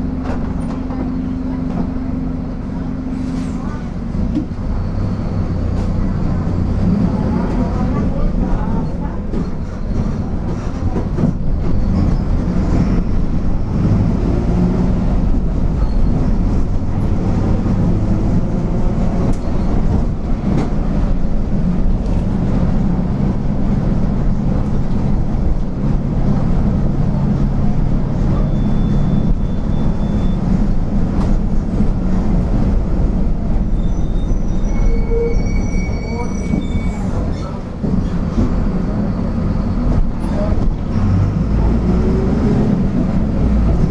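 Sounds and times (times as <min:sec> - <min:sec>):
drivetrain rumble: 0:00.0 - 0:34.6
bus engine drone: 0:00.0 - 0:43.9.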